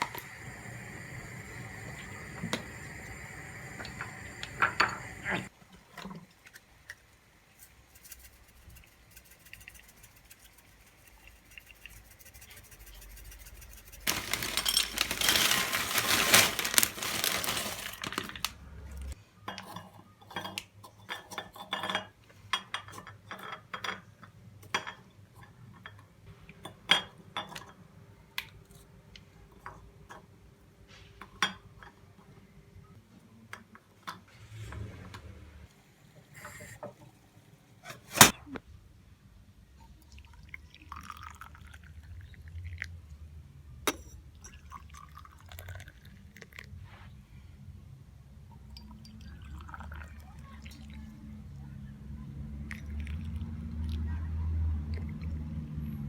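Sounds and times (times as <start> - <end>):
dishes and cutlery clinking: 19.5 - 27.8.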